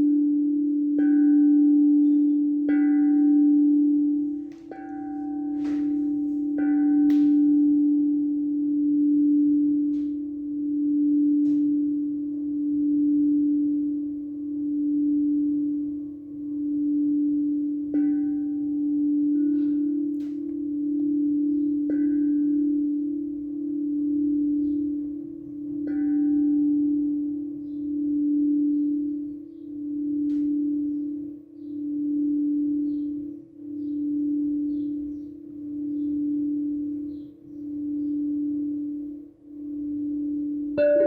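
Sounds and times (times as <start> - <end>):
singing bowl ringing: 0.0 - 41.0
high chime strikes: 4.5 - 7.6.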